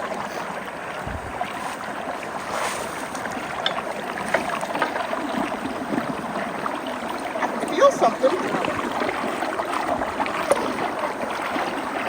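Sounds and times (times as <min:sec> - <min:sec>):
flood water rushing into culvert: 0:00.0 - 0:12.0.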